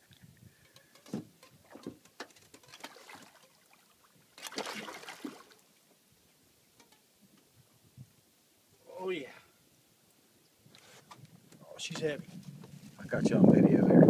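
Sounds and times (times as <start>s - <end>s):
fish splashing: 0.8s - 5.7s
water sloshing near boat: 1.0s - 5.8s.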